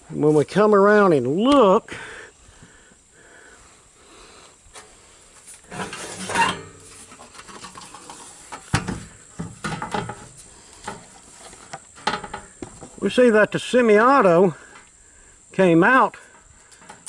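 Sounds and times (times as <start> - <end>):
handling rubbing and clattering: 4.8 - 13.0
scrape: 5.7 - 8.6.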